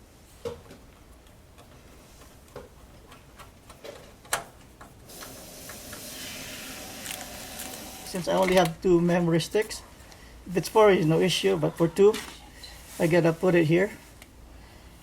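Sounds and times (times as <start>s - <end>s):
steady hiss: 5.1s - 8.3s.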